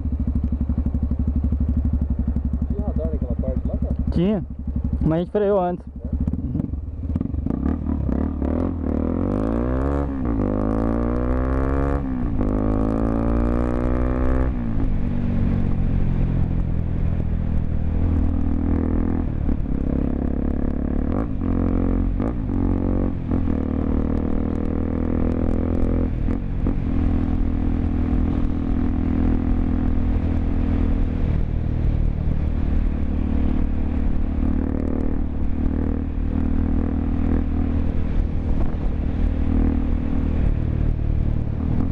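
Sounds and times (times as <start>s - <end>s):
motorcycle engine accelerating: 0.0s - 41.9s.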